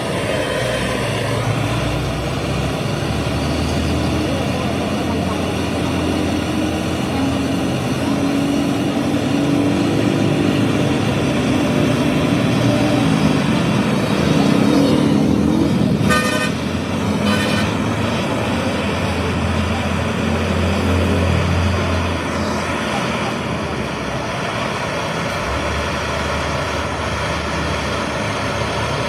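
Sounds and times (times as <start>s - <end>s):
vehicle engine running: 0.0s - 29.0s
short horn toots: 16.0s - 16.6s.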